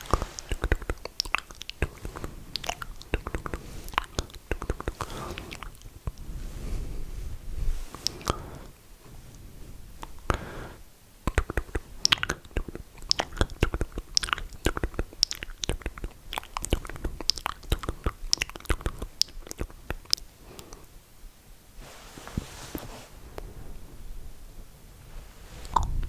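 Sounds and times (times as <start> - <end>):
tongue clicks: 0.0 - 6.2, 11.2 - 20.8, 25.6 - 26.0
wet lip smacks: 0.0 - 6.2, 7.9 - 8.4, 11.2 - 20.8, 25.6 - 26.0.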